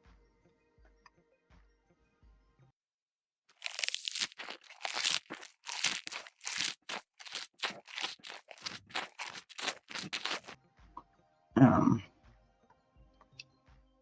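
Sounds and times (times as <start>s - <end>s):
person chewing crunchy food: 3.5s - 10.6s.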